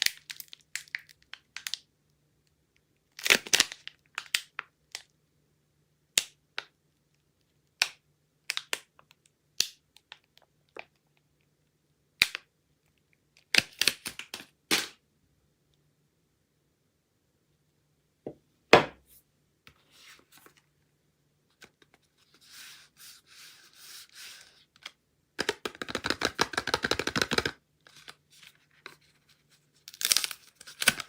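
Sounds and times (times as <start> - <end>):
packaging wrapper crackling: 29.9 - 31.0.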